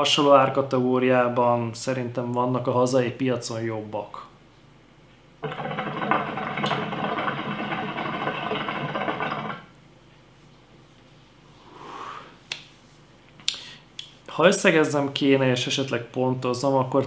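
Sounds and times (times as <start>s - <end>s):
water bubbling in hookah: 5.4s - 9.7s
breathy exhale: 11.6s - 12.4s.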